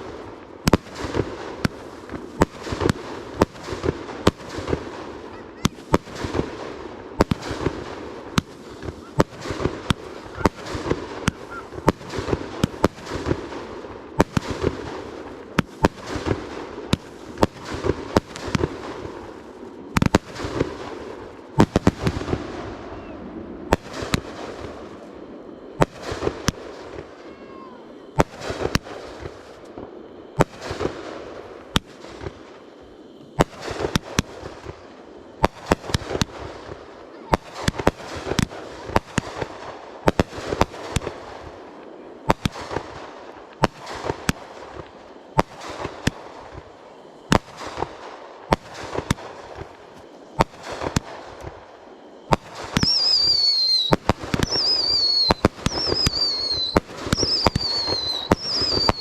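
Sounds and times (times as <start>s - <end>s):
fireworks bangs and crackle: 0.0s - 59.0s
high falling whistle: 52.7s - 59.0s.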